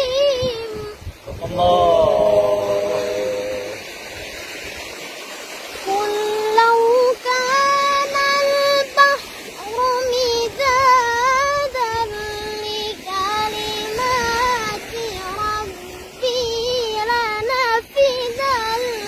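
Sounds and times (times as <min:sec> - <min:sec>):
child chanting melodic recitation: 0:05.9 - 0:19.0.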